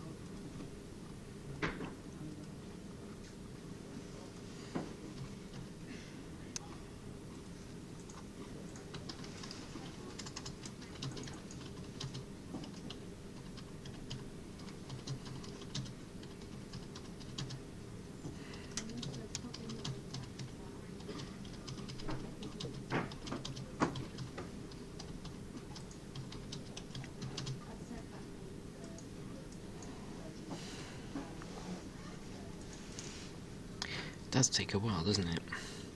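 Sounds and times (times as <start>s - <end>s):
steady low hum: 0.0s - 35.9s.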